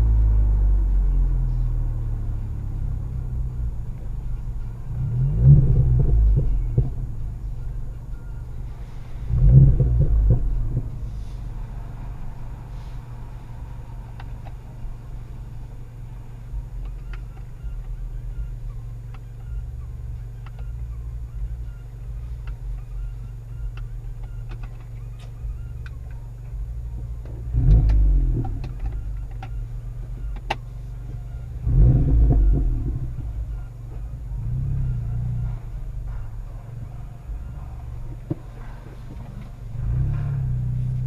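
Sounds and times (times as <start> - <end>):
engine revving: 0.0 - 18.8, 26.9 - 41.0
car engine droning: 0.0 - 41.0
sharp exhaust pops: 4.9 - 7.3, 9.3 - 11.4, 27.2 - 36.9.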